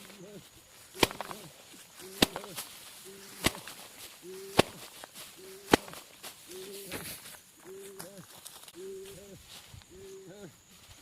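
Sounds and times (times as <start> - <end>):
sharp whack: 1.0 - 1.4, 2.2 - 2.5.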